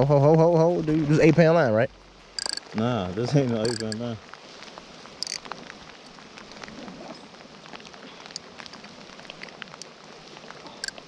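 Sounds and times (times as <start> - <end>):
water rushing over rocks: 0.0 - 11.0
small clicks: 2.4 - 2.7, 3.6 - 4.0, 5.2 - 5.6, 10.8 - 11.0.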